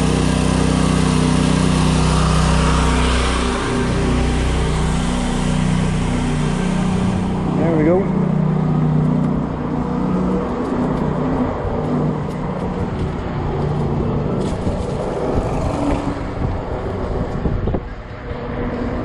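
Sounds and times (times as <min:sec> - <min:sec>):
low hum of riding bike: 0:00.0 - 0:19.0
wind buffeting microphone: 0:05.7 - 0:19.0.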